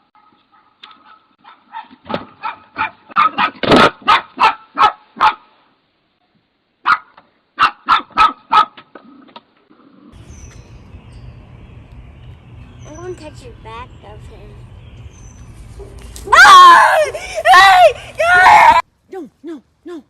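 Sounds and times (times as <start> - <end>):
dog barking: 0.2 - 5.5, 6.8 - 8.8.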